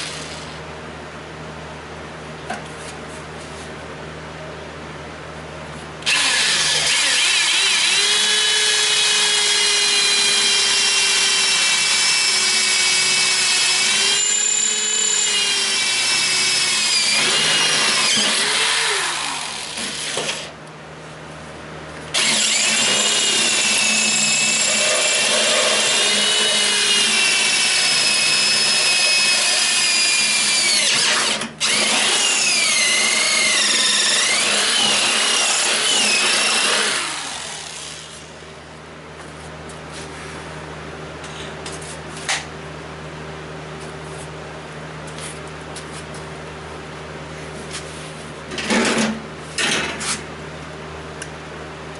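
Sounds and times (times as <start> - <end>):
power drill motor whine: 0.0 - 0.6, 6.0 - 20.5, 22.1 - 38.3.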